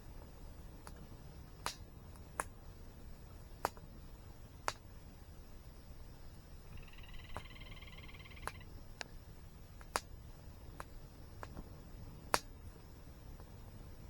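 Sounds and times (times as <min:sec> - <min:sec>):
wood fire crackling and popping: 0:00.0 - 0:06.7, 0:08.4 - 0:14.0
bird trilling: 0:06.7 - 0:08.7.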